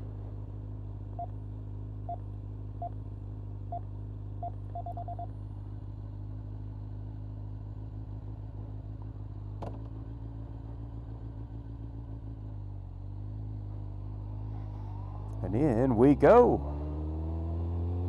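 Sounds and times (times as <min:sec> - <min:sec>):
motorcycle engine idling: 0:00.0 - 0:15.8
electronic keypad beeps: 0:04.4 - 0:05.3.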